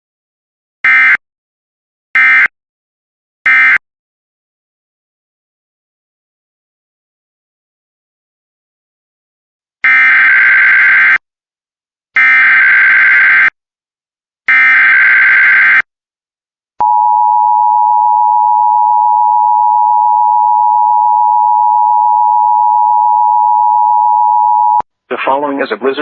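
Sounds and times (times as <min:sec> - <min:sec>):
two-tone attention signal: 0:16.8 - 0:24.8.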